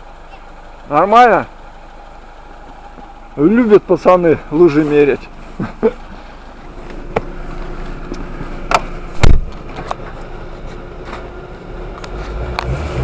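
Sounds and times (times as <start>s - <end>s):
car engine rumbling: 0.0s - 13.0s
loud low thump: 8.7s - 9.5s.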